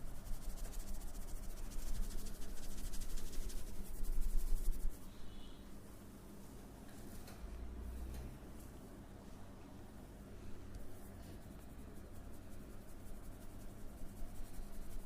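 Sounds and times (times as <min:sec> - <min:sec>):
fast scratching massage strokes: 0:00.0 - 0:05.1, 0:10.8 - 0:15.0.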